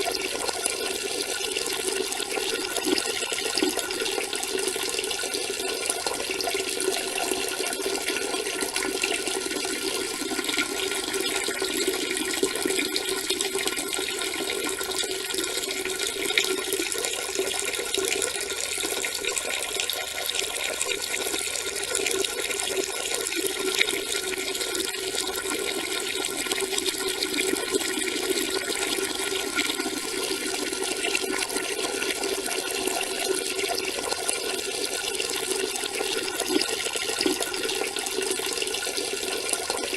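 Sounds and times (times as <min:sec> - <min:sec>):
urine splashing into toilet water: 0:00.0 - 0:39.9.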